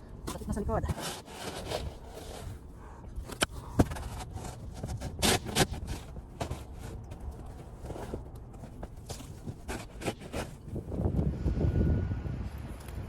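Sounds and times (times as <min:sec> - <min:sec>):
shovel scraping wet snow: 0:00.9 - 0:02.5, 0:04.1 - 0:07.0, 0:09.3 - 0:10.6.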